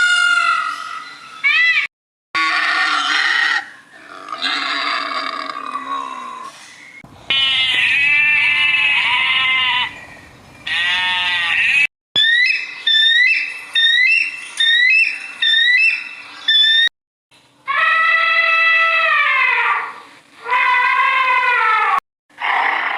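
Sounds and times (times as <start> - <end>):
animal bleating: 7.3 - 10.0, 10.7 - 11.9.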